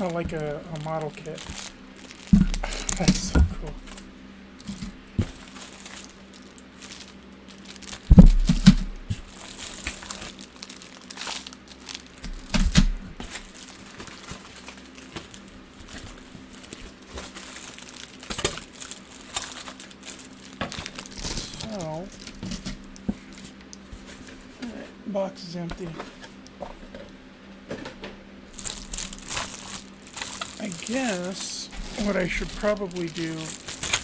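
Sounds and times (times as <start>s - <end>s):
plastic packaging crinkling: 0.0s - 24.7s, 28.5s - 34.0s
heavy thuds: 2.3s - 4.0s, 8.1s - 9.4s.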